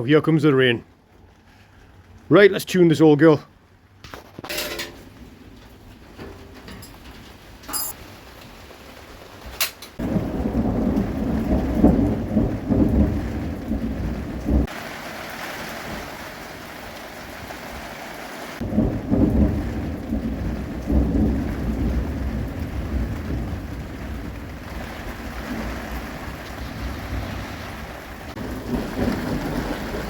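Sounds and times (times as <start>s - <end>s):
rain hissing: 5.0s - 30.0s
thunder rumbling: 10.0s - 15.0s, 18.6s - 30.0s.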